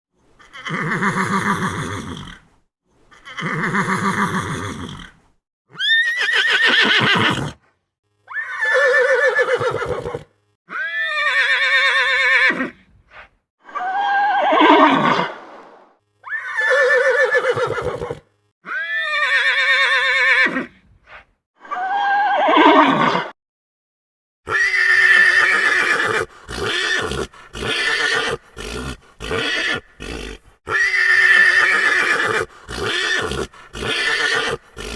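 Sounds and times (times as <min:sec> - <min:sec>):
horse whinnying: 0:00.4 - 0:02.5, 0:03.1 - 0:07.6, 0:08.3 - 0:12.8, 0:16.2 - 0:20.8, 0:24.5 - 0:34.9.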